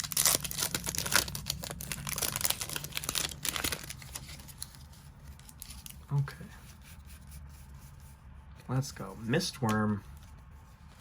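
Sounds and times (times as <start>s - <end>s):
foil wrapper crinkling: 0.0s - 6.2s.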